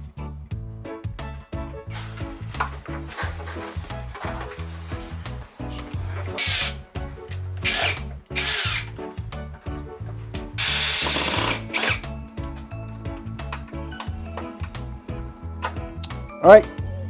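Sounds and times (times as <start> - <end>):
background music with steady beat: 0.0 - 17.0
electric screwdriver running: 6.2 - 6.9, 7.6 - 9.0, 10.6 - 12.1.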